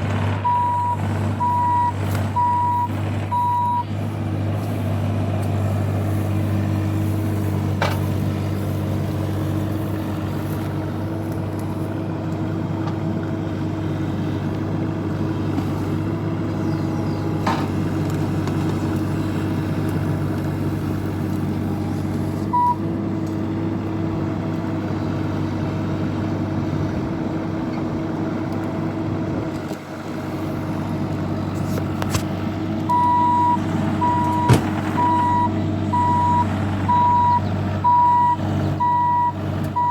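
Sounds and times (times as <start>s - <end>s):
excavator diesel engine running: 0.0s - 39.9s
travel alarm beeping: 0.4s - 3.9s, 22.5s - 22.8s, 32.9s - 39.9s.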